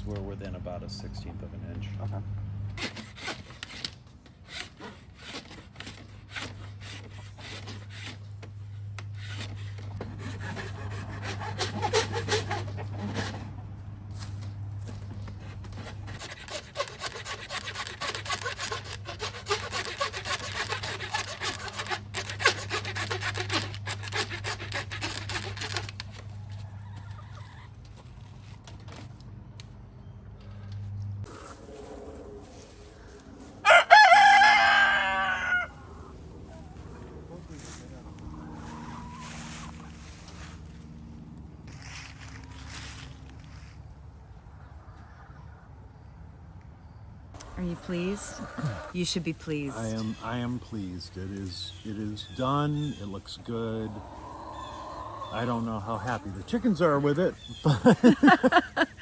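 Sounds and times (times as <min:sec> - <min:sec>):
rasping strokes on wood: 0:02.8 - 0:08.4, 0:09.0 - 0:13.4, 0:15.5 - 0:26.0, 0:47.4 - 0:59.0.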